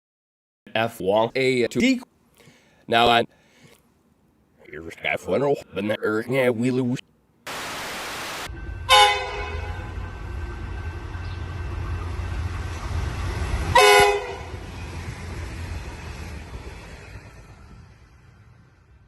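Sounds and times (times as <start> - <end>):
burst of static: 7.5 - 8.5
train horn blasts: 8.5 - 14.7
train rumbling: 8.5 - 19.0.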